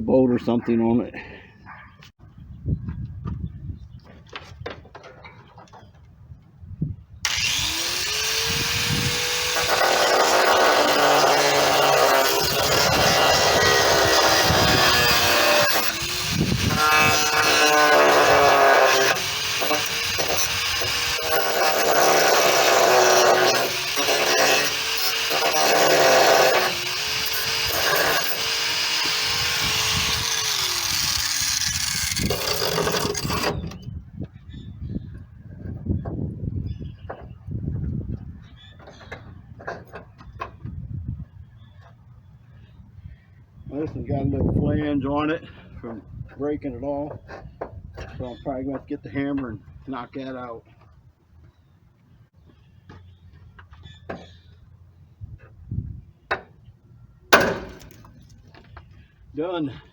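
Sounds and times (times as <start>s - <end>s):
angle grinder cutting steel: 7.3s - 33.8s.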